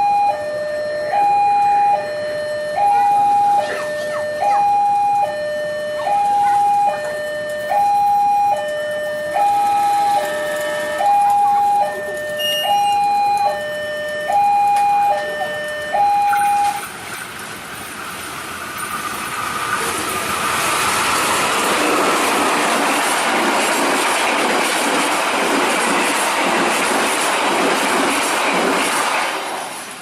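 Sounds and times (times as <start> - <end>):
level crossing two-tone alarm: 0.0 - 17.0.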